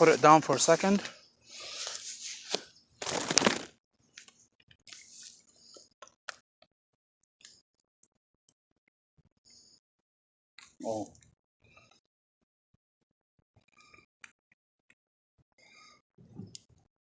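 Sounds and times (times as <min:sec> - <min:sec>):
rustling and crunching handling: 0:00.0 - 0:01.1, 0:01.8 - 0:03.7.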